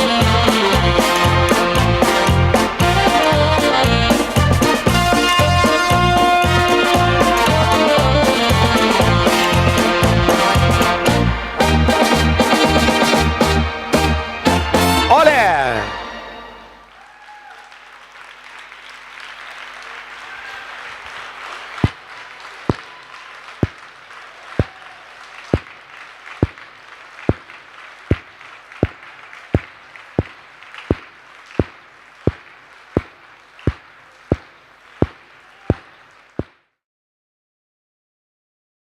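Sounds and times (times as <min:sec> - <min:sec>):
audience applause: 0:16.9 - 0:36.5
clapping in unison: 0:16.9 - 0:36.7.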